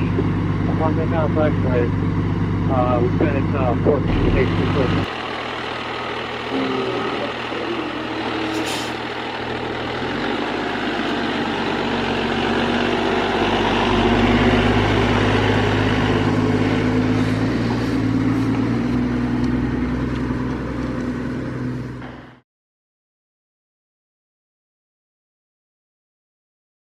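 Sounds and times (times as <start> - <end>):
diesel truck engine running: 0.0 - 22.4.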